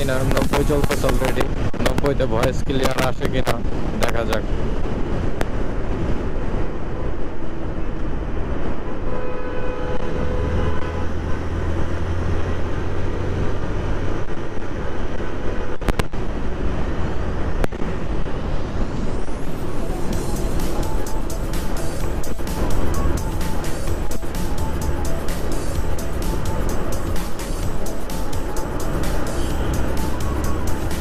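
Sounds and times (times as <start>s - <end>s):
wind and road noise: 0.0s - 31.0s
motorcycle engine hum: 11.4s - 31.0s.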